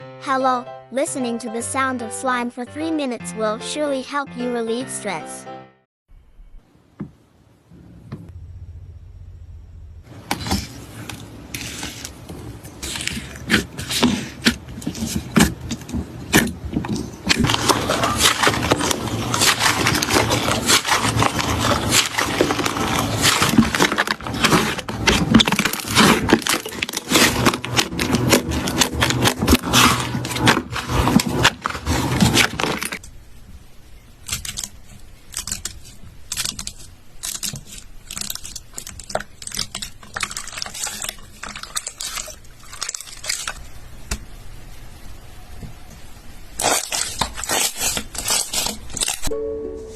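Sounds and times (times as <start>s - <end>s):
slime crackling and popping: 10.3s - 33.1s, 34.2s - 44.2s, 46.5s - 49.3s.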